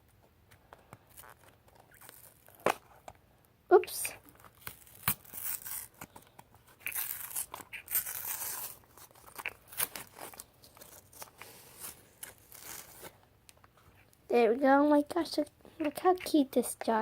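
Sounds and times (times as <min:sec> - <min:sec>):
plastic packaging crinkling: 0:04.3 - 0:13.1.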